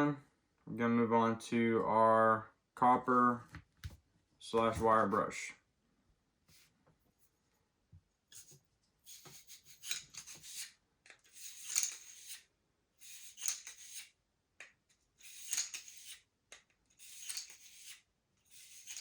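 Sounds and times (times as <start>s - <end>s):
wire brush scraping gun barrel: 17.0s - 19.0s.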